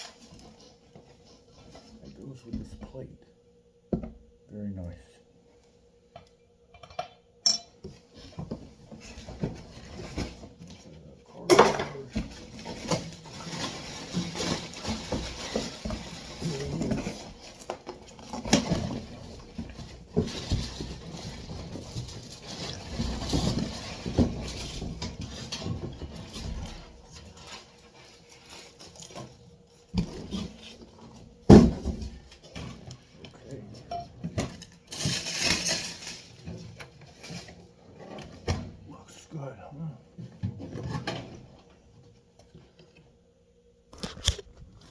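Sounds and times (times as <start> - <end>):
clinks like dishware: 7.4 - 7.7.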